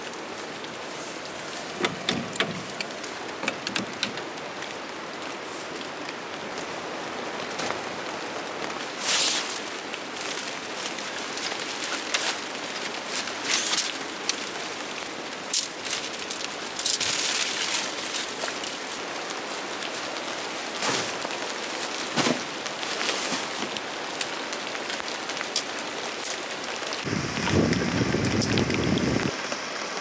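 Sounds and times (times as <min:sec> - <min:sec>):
rain drops pattering: 0:00.0 - 0:30.0
heavy rain rush: 0:23.8 - 0:30.0.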